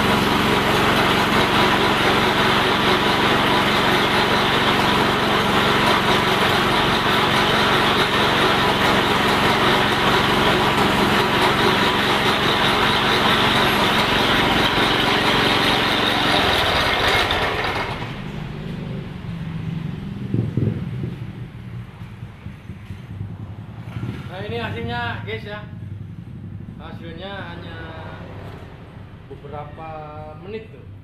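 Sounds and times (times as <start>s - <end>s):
pellet mill motor droning: 0.0s - 19.0s.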